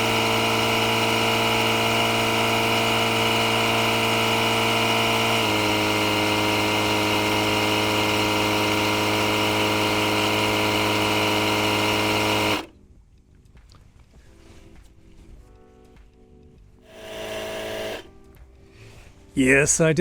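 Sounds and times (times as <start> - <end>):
portable air compressor running: 0.0 - 12.8, 16.9 - 18.2.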